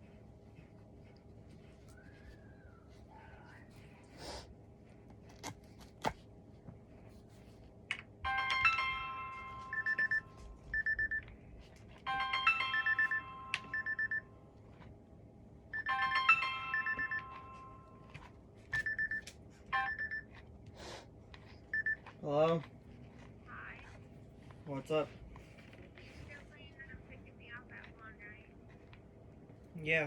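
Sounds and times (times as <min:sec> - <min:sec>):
phone ringtone chiming melody: 0:08.2 - 0:11.2, 0:11.9 - 0:14.5, 0:15.7 - 0:20.3
quick beeps: 0:18.8 - 0:19.2, 0:21.7 - 0:22.0.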